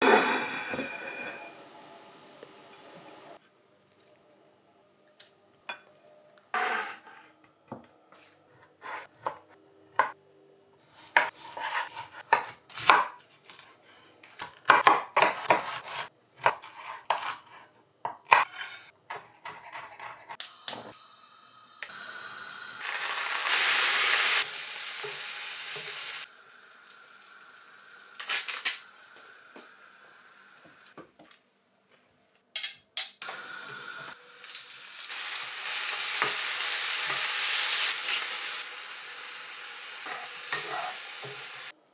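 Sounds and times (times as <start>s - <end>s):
utensils and cookware clattering: 0.0s - 1.9s, 28.2s - 29.0s, 32.6s - 34.6s, 40.0s - 41.7s
food sizzling in a frying pan: 20.5s - 31.0s, 33.2s - 41.7s.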